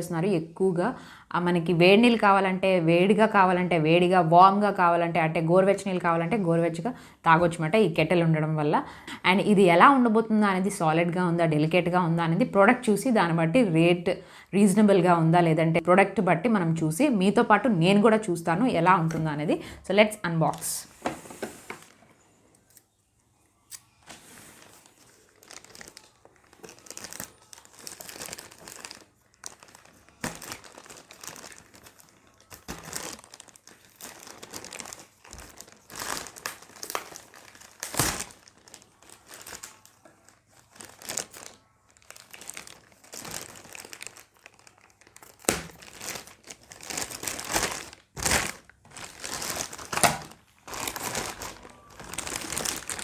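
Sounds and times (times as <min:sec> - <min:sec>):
packaging crinkling and tearing: 0:24.5 - 0:53.0.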